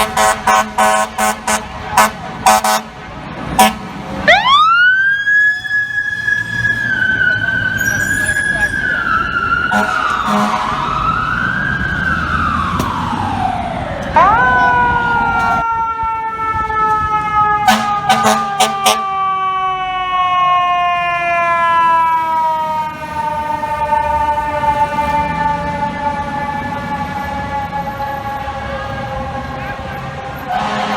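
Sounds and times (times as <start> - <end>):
short horn blasts: 0.0 - 2.9, 9.7 - 10.7, 17.7 - 19.0, 30.5 - 30.9
wailing siren: 0.0 - 30.9
siren falling in pitch: 4.3 - 29.5.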